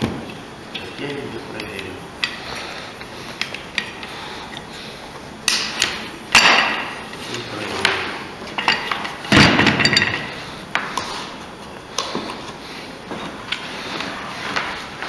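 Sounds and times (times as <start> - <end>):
metallic clanks of tools: 5.5 - 10.4.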